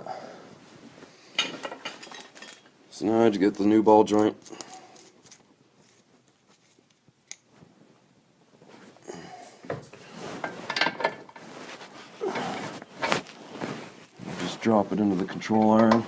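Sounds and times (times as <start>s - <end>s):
metal parts clattering and clinking: 1.4s - 2.7s, 15.6s - 16.0s.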